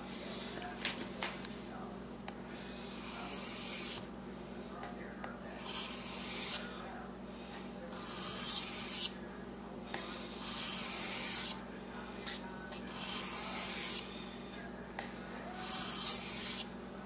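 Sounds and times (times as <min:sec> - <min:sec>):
abrasive rasping on steel blade: 0:08.0 - 0:09.2, 0:10.4 - 0:11.6, 0:12.9 - 0:14.1, 0:15.6 - 0:16.7.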